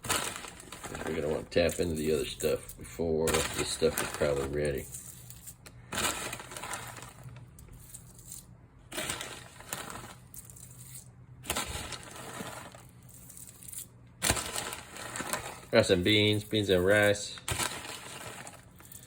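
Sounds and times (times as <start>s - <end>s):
dry food pouring into pot: 0.0s - 2.6s, 3.3s - 4.9s, 5.9s - 7.3s, 8.9s - 10.2s, 11.5s - 13.4s, 14.2s - 19.0s.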